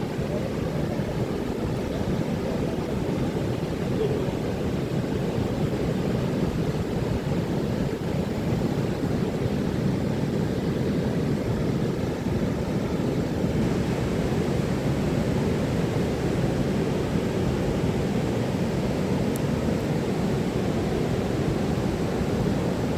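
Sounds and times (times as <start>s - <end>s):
ocean waves breaking on beach: 0.0s - 22.9s.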